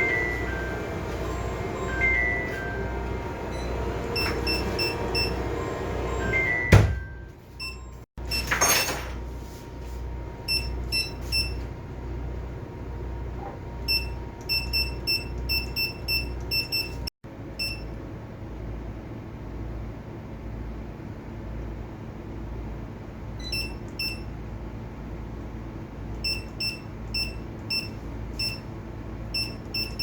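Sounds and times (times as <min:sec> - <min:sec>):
keypad beeps: 0:00.0 - 0:02.9, 0:03.5 - 0:05.5, 0:06.1 - 0:08.6, 0:10.5 - 0:11.6, 0:13.9 - 0:17.8, 0:23.4 - 0:24.3, 0:26.2 - 0:28.6, 0:29.3 - 0:30.0
low machinery hum: 0:00.0 - 0:30.0.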